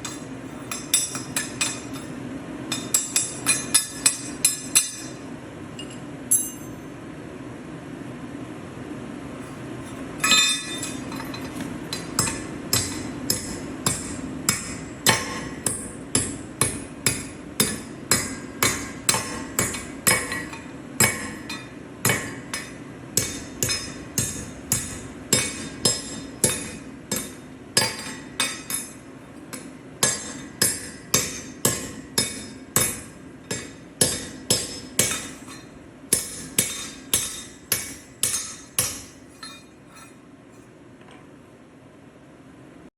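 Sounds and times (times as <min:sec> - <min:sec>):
steady low hum: 0:00.0 - 0:42.9.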